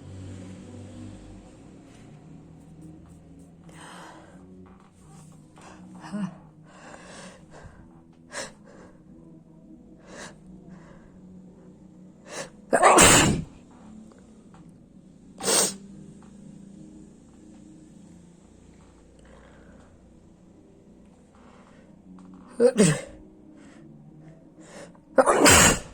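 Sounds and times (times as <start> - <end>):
person sneezing: 12.4 - 13.6, 15.4 - 15.8, 22.5 - 23.2, 25.2 - 25.9.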